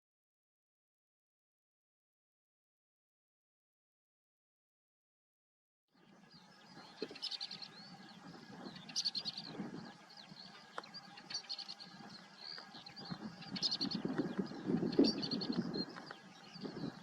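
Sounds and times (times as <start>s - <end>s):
bird singing scratchy phrases: 6.0s - 17.0s.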